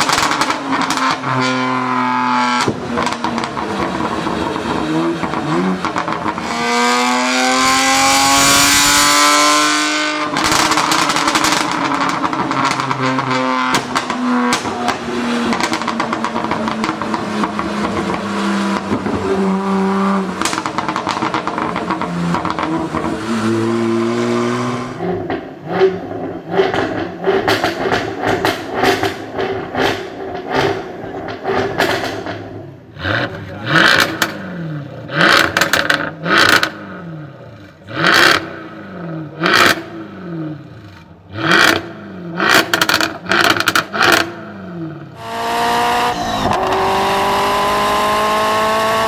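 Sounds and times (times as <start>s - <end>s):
exhaust pops and crackles: 0.0s - 1.6s, 2.5s - 6.6s, 10.2s - 23.2s, 25.2s - 34.4s, 35.2s - 36.8s, 40.8s - 44.4s
car engine revving hard: 0.0s - 49.0s.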